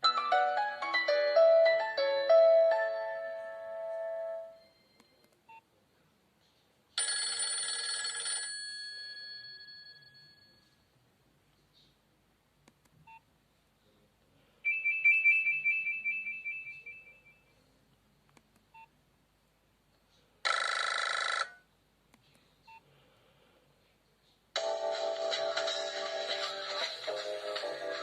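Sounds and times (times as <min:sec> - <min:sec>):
phone two-tone trilling ring: 0:20.5 - 0:21.6.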